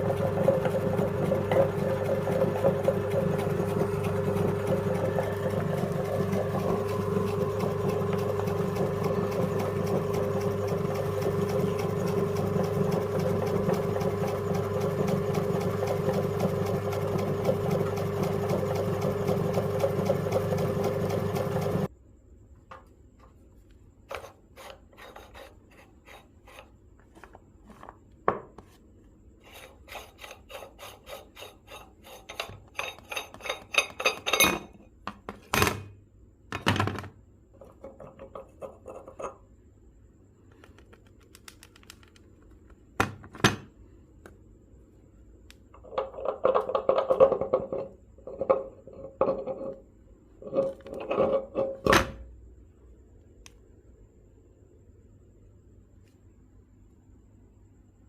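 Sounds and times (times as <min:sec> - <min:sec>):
meat grinder motor humming: 0:00.0 - 0:21.9
scraping and clicking handling noises: 0:22.6 - 0:35.8.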